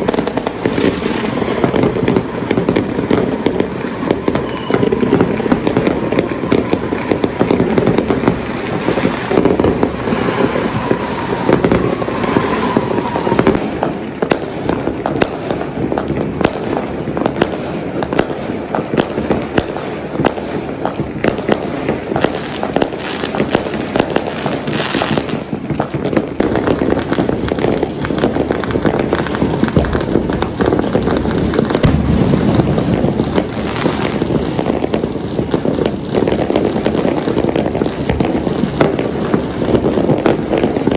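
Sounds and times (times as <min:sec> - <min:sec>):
firecrackers cracking and banging: 0:00.0 - 0:40.9
faint falling whistle: 0:04.3 - 0:04.9.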